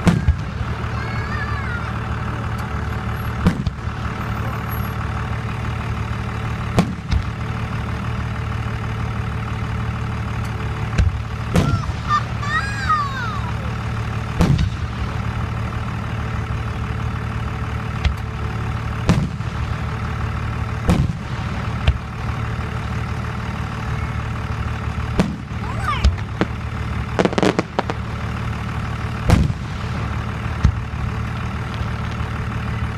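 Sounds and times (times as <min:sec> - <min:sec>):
fireworks bursting: 0:00.0 - 0:02.0, 0:10.9 - 0:15.7, 0:20.7 - 0:22.3, 0:25.1 - 0:28.2, 0:29.2 - 0:32.3
vehicle engine idling: 0:00.0 - 0:32.9.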